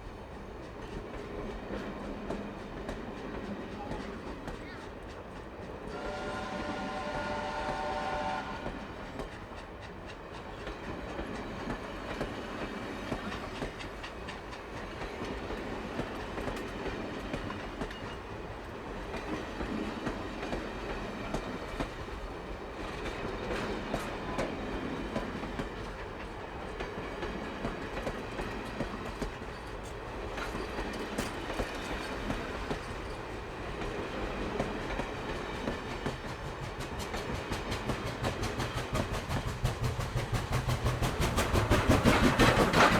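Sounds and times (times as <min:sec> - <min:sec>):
train rumbling along track: 0:00.0 - 0:42.9
train horn chord: 0:05.9 - 0:08.8
wheels clicking over rails: 0:34.6 - 0:42.9.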